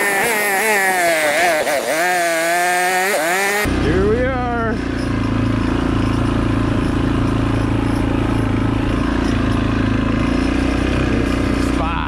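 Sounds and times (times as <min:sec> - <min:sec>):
drone motors buzzing: 0:00.0 - 0:12.0.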